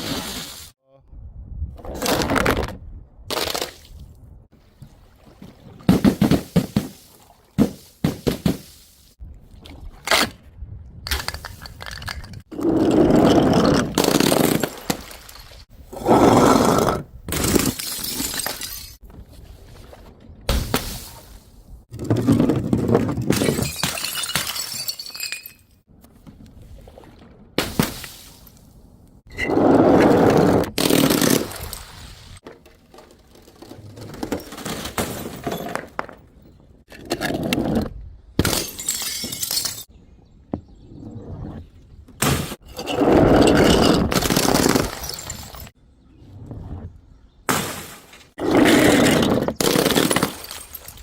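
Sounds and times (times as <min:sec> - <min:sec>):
glass bottles smashing: 0:17.4 - 0:19.0, 0:23.3 - 0:25.8, 0:38.4 - 0:39.9, 0:42.7 - 0:45.7, 0:48.9 - 0:51.0.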